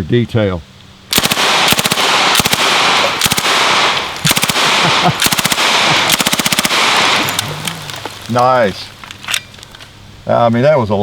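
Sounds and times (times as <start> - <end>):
submachine gun automatic bursts: 1.1 - 7.5
gunfire echo: 1.1 - 8.7.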